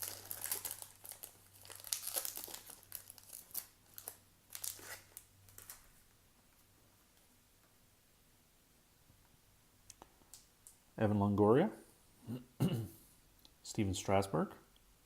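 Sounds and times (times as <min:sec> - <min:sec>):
wrapper tearing and crinkling: 0:00.0 - 0:06.0.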